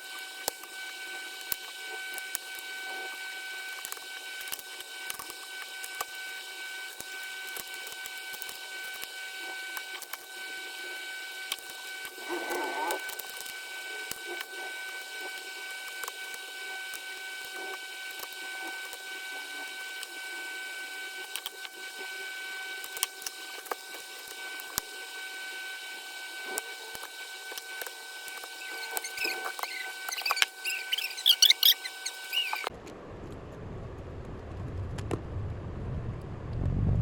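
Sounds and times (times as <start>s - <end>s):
steady high-pitched whine: 0.0s - 34.6s
squeaky chirps: 28.4s - 32.7s.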